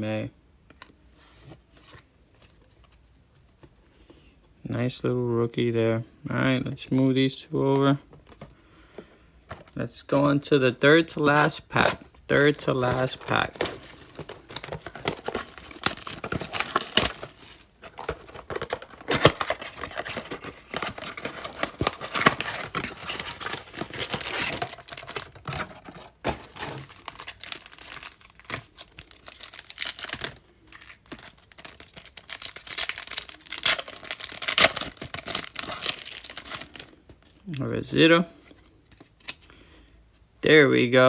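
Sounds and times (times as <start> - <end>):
foil wrapper tearing and crinkling: 11.3 - 37.0.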